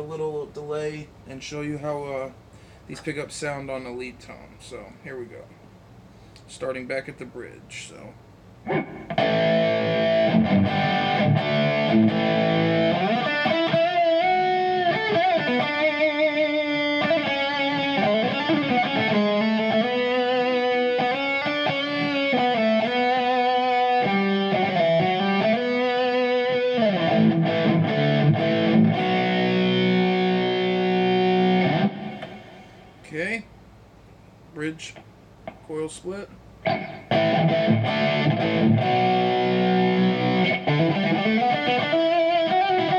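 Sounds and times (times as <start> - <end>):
distorted electric guitar lead: 8.6 - 33.0, 36.6 - 42.9.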